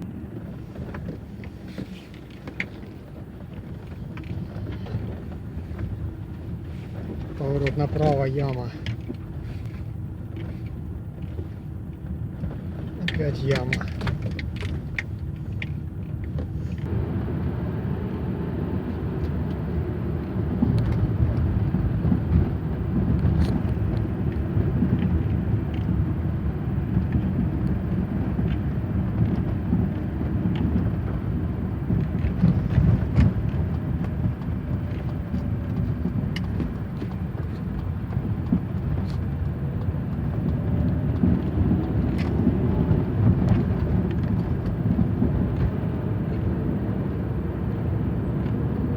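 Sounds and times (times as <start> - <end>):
engine and road noise: 0.0 - 48.9.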